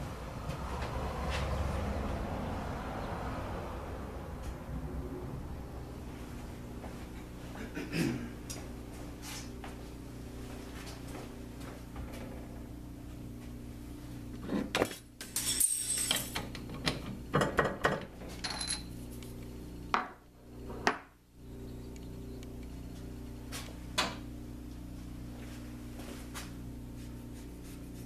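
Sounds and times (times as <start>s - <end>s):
electrical machine hum: 0.0s - 28.0s
metal tools clinking: 15.2s - 16.4s, 18.4s - 18.9s.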